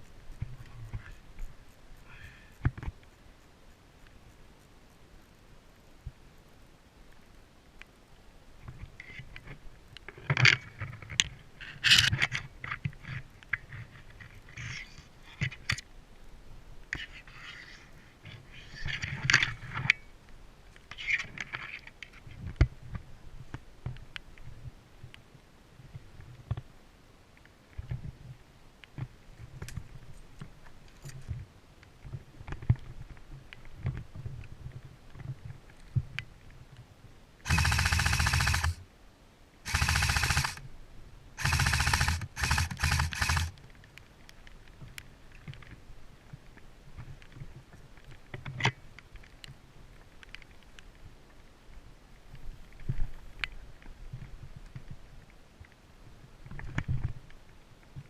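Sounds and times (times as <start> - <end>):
airsoft rifle firing bursts: 37.5 - 38.8, 39.7 - 40.6, 41.4 - 43.6
sharp clicks: 37.5 - 38.8, 39.7 - 40.6, 41.4 - 43.6.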